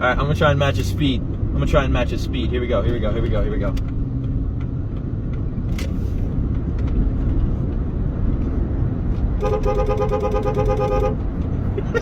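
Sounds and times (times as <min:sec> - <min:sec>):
road and wind noise: 0:00.0 - 0:12.0
truck driving rumble: 0:00.0 - 0:12.0
car horn: 0:09.4 - 0:11.3.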